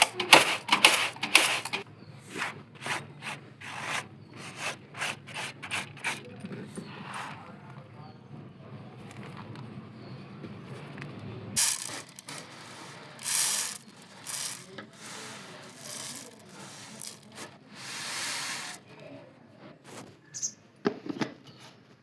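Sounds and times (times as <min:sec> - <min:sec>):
short scraping noises: 0:00.0 - 0:07.6, 0:11.6 - 0:18.8.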